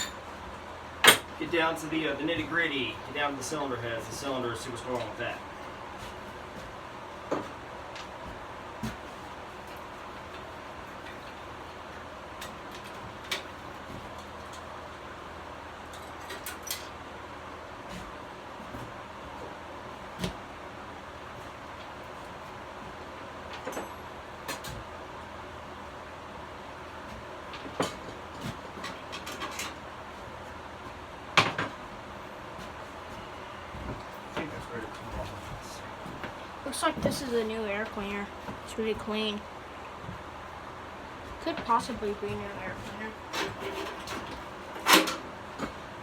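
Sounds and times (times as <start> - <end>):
clinks of metal tools: 0.0 - 0.2, 15.9 - 17.0.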